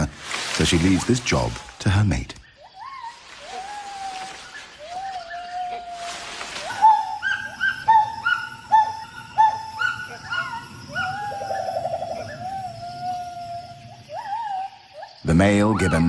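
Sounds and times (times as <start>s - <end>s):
gibbon calling: 2.6s - 15.2s.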